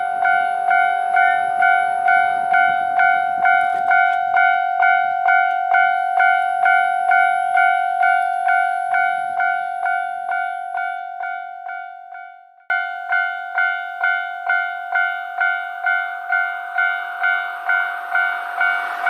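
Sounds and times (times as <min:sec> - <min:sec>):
level-crossing warning bell: 0:00.0 - 0:19.0.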